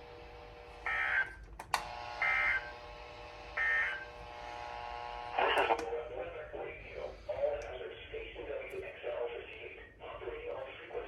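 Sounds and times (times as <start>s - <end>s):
sharp clicks: 1.6s - 1.9s
faint steady buzz: 1.8s - 5.8s.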